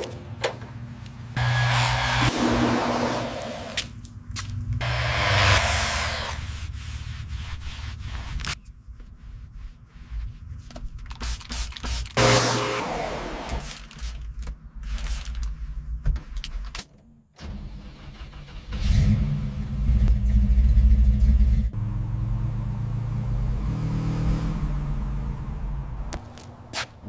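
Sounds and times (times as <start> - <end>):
car engine running and revving: 1.4 - 3.9, 4.5 - 6.8, 18.8 - 26.2.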